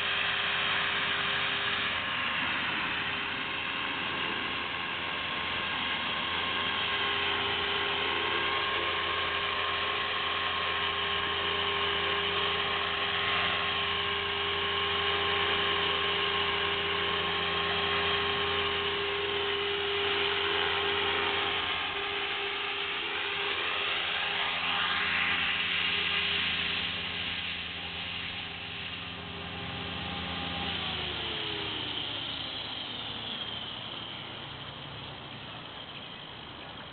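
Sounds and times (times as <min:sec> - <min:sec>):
electric motor and gears whining: 0:00.0 - 0:36.9
rotor blades humming: 0:00.0 - 0:36.9.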